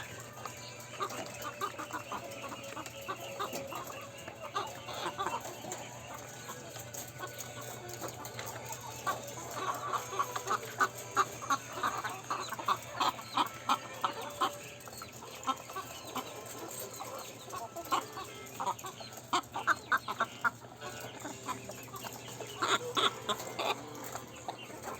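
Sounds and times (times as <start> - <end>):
chicken clucking: 0.0 - 24.9.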